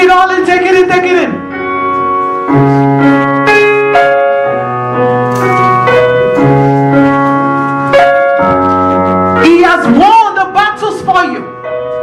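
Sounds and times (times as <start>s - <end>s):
keyboard playing slow chords: 1.3s - 10.6s.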